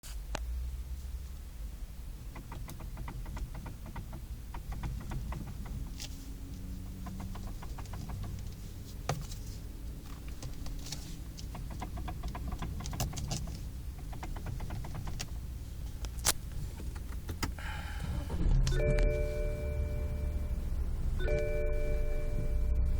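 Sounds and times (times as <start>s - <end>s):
low engine hum: 0.2s - 22.9s
steering clicks and knocks: 2.1s - 19.6s.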